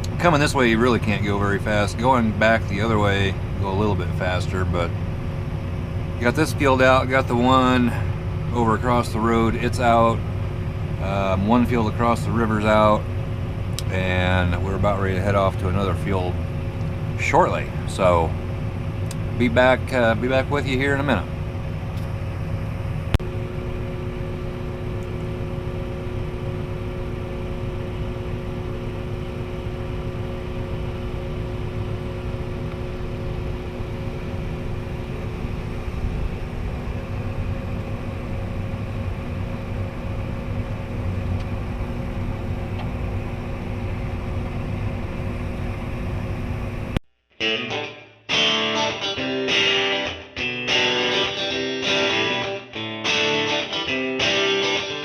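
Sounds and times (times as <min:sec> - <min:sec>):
vehicle engine drone: 0:00.0 - 0:47.0
electric guitar music: 0:47.4 - 0:55.0.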